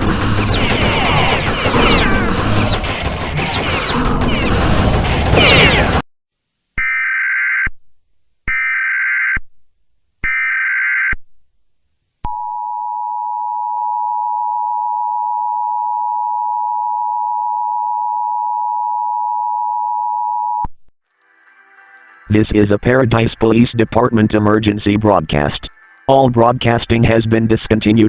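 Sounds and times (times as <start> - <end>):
digital data tone bursts: 5.2 - 5.9.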